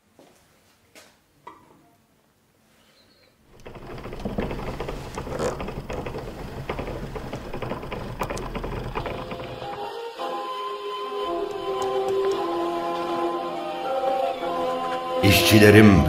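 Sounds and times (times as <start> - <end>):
machine clattering: 3.5 - 10.6, 11.2 - 15.1.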